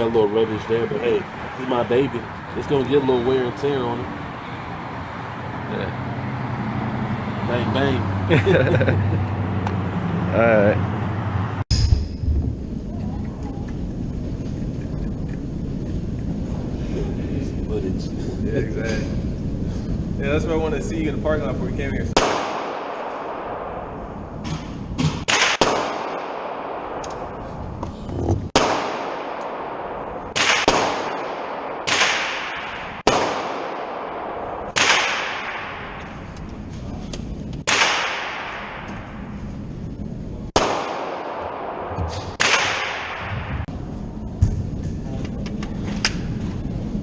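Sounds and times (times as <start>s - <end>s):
rifle shots echoing: 22.2s - 24.0s, 25.2s - 27.5s, 28.6s - 36.2s, 37.6s - 38.9s, 40.5s - 43.7s.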